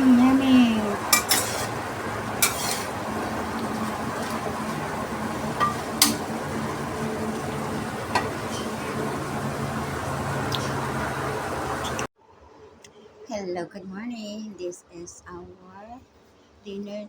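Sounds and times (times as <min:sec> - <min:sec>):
food sizzling in a frying pan: 0:00.0 - 0:12.1
utensil knocking against pan: 0:05.4 - 0:06.4, 0:08.1 - 0:08.8.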